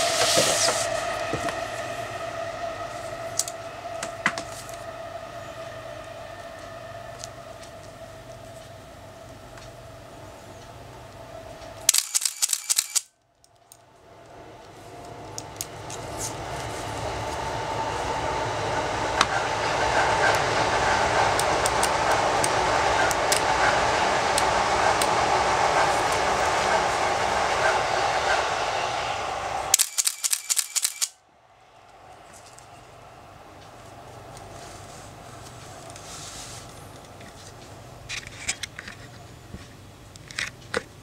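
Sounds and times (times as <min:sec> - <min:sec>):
steady rushing noise: 0:00.0 - 0:07.5, 0:14.0 - 0:38.1
camera shutter clicking in bursts: 0:11.9 - 0:13.1, 0:29.8 - 0:31.2.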